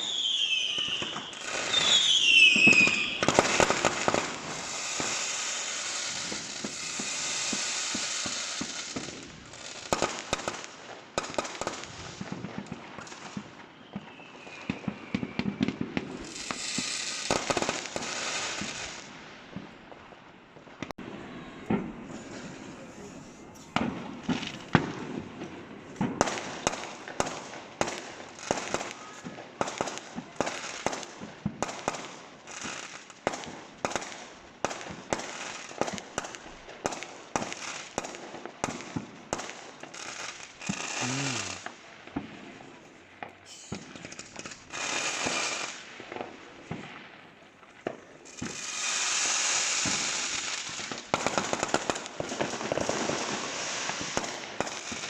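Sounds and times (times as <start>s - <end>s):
fireworks bangs: 0.0s - 55.0s
fireworks crackling hiss: 0.0s - 55.0s.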